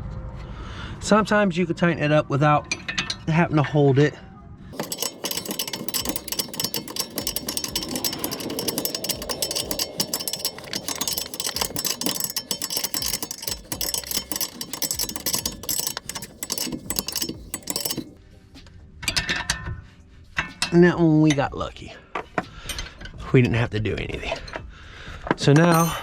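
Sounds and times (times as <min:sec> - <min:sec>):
ratchet wrench clicking: 0:04.8 - 0:18.2.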